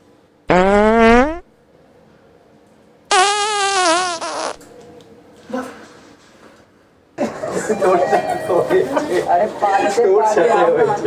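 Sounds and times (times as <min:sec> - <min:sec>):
fart sound effect: 0:00.5 - 0:01.4, 0:03.1 - 0:04.6.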